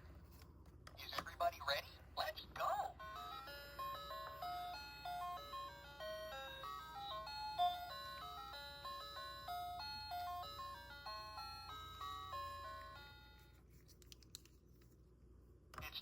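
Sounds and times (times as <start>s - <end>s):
electronic toy melody: 2.7s - 13.5s.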